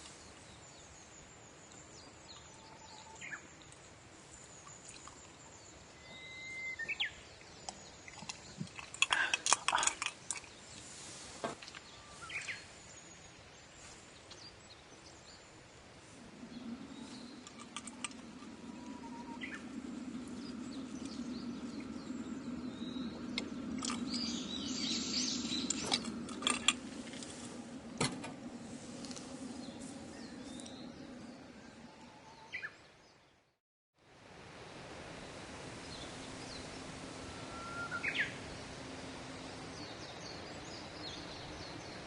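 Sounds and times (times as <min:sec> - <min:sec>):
outdoor ambience: 0:00.0 - 0:42.0
low drone: 0:15.9 - 0:32.8
bird chirps: 0:16.4 - 0:27.6.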